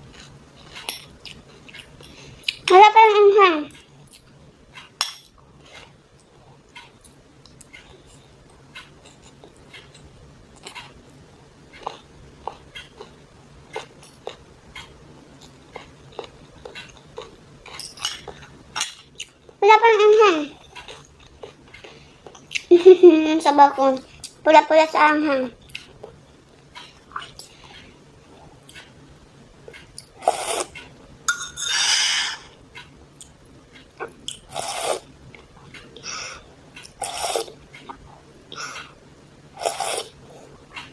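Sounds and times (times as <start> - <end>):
person chewing noodles: 0.0 - 2.7, 11.7 - 19.6, 29.7 - 31.0, 31.7 - 39.0, 39.6 - 40.9
slurping noodle soup: 30.2 - 30.8, 34.5 - 35.1, 37.0 - 38.0, 39.6 - 40.2.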